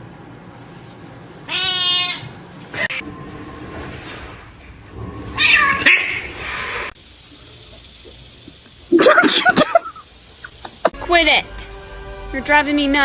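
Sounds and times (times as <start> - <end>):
cat meowing: 1.5 - 3.0, 5.4 - 6.3.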